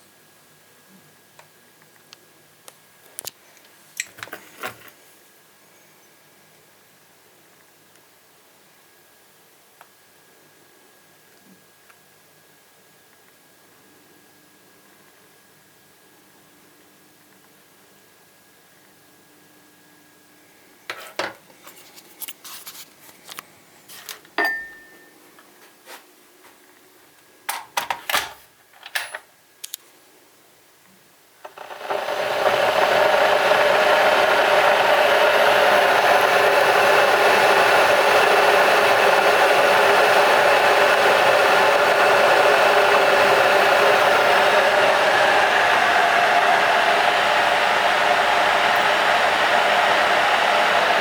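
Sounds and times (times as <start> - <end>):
loud steady rushing blower: 31.7 - 51.0.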